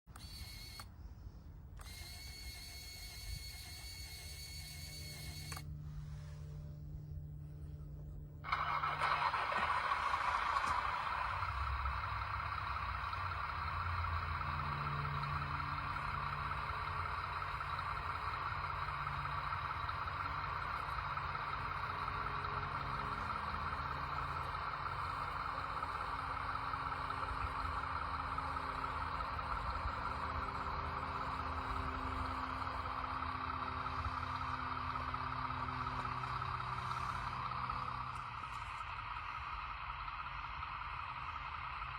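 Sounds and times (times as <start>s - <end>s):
motor running with whirring hiss: 0.1s - 1.0s, 1.8s - 6.4s.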